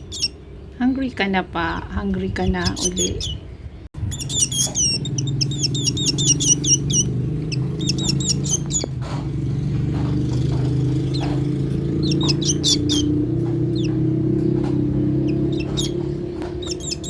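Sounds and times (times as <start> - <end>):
nestling begging chirps: 0.0 - 0.6, 1.8 - 17.0
person speaking: 0.8 - 3.4.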